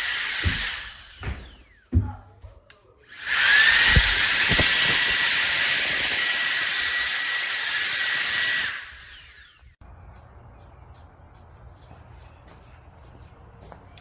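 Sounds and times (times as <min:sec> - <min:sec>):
air duster fan motor whine: 0:03.1 - 0:09.8.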